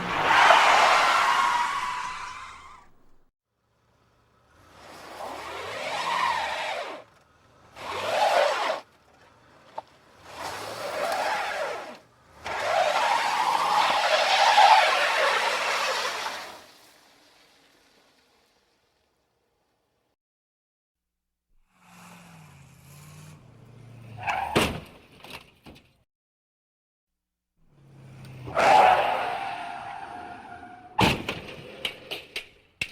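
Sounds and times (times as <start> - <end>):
car tyres skidding: 0.0 - 18.7, 21.8 - 25.2, 27.8 - 32.1
car engine: 0.0 - 19.0, 21.8 - 24.5.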